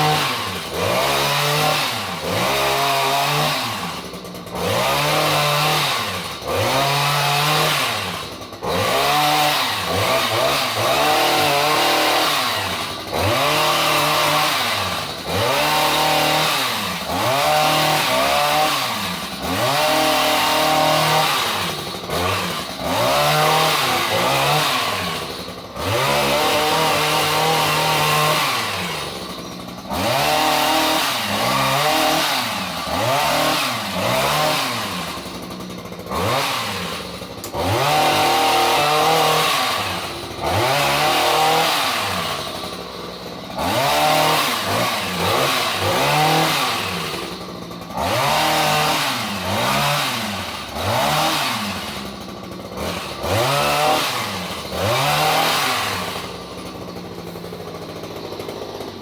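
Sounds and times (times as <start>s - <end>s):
chainsaw revving: 0.0s - 59.0s.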